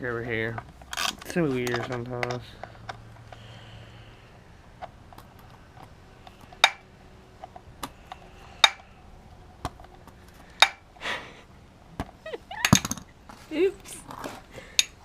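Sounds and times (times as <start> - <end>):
metal tools clinking: 0.3 - 2.9.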